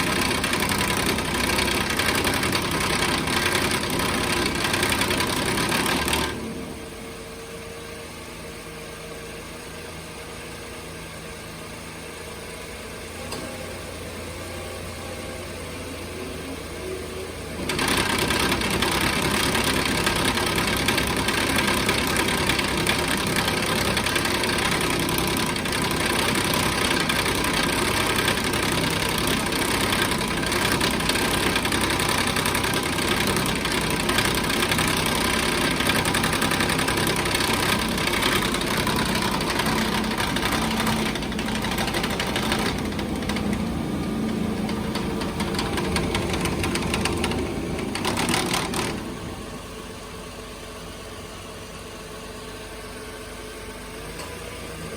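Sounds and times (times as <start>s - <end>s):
engine idling: 0.0s - 54.9s
cooling fan clanking rattle: 17.6s - 49.3s.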